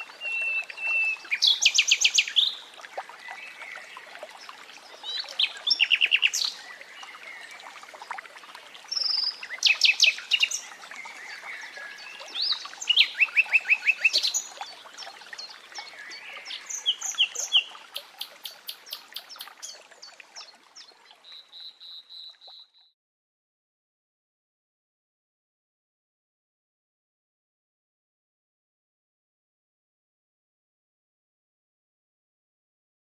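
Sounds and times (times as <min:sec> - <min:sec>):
running water rushing: 0:00.0 - 0:22.3.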